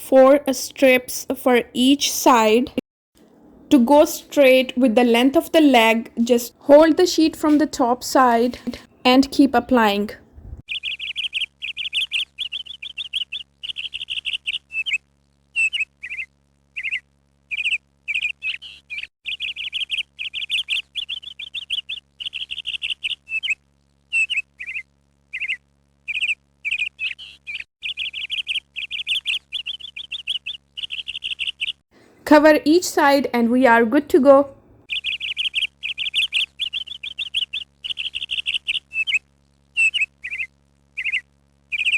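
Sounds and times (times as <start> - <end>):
small bird chirping: 10.4 - 31.8, 34.8 - 41.9.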